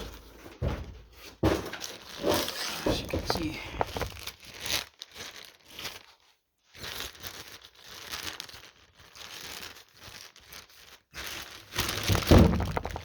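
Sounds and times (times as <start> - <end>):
plastic packaging crinkling: 1.8 - 13.0.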